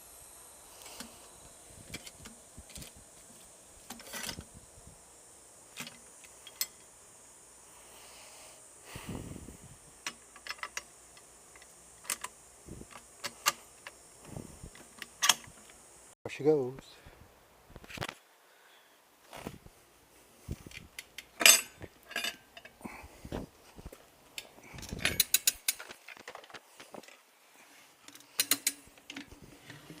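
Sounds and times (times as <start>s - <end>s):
metal tools clicking and clinking: 21.0s - 22.8s, 24.8s - 26.2s, 28.1s - 29.3s.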